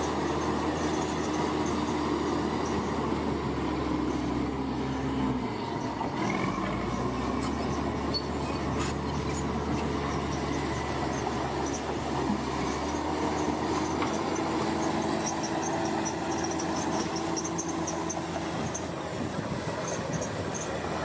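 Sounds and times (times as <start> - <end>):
bulldozer diesel engine: 0.0 - 21.0
thin metallic squeal: 5.8 - 11.9, 12.6 - 18.9.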